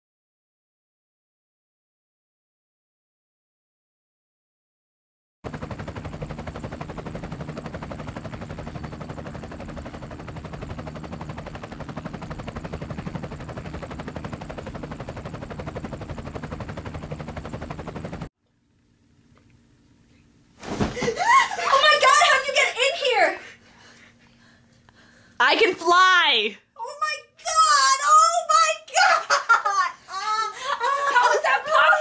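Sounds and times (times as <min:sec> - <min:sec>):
fast rattling pulse: 0:05.5 - 0:18.3.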